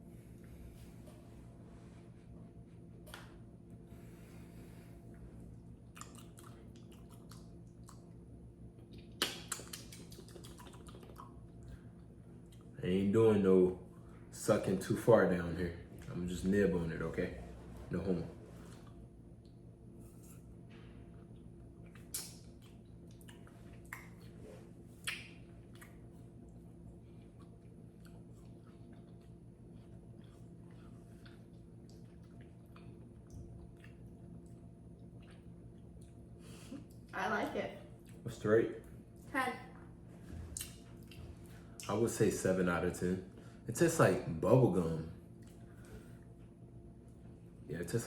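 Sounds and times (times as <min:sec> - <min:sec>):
steady low hum: 0:00.0 - 0:48.0
mouth smacks and clicks: 0:08.9 - 0:11.3, 0:21.9 - 0:24.2, 0:25.0 - 0:26.0.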